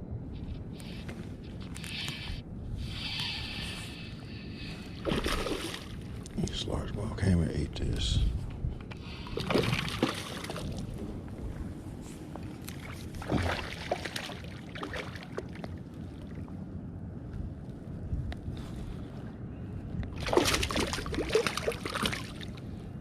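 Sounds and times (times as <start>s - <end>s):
water sloshing around boat: 4.8s - 6.5s, 9.0s - 16.8s, 20.1s - 23.0s
wind on microphone: 7.6s - 14.0s, 15.8s - 23.0s.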